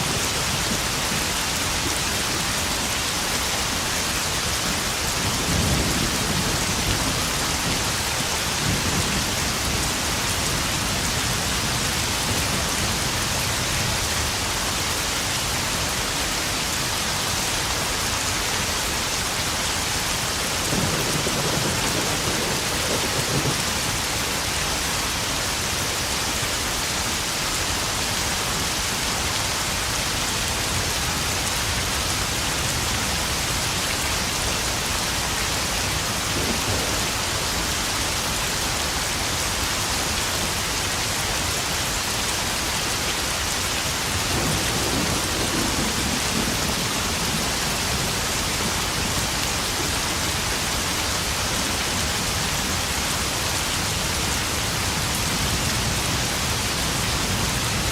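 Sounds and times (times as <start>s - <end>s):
heavy rain drumming on puddles: 0.0s - 57.9s
thunder rolling: 20.7s - 24.0s.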